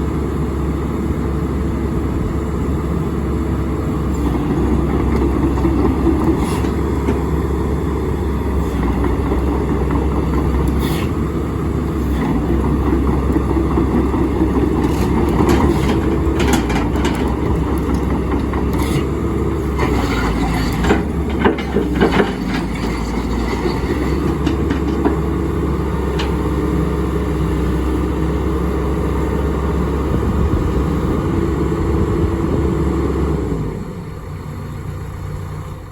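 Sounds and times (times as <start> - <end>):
excavator diesel engine running: 0.0 - 35.9
sharp knocks and clanks: 13.5 - 19.0, 19.8 - 25.3.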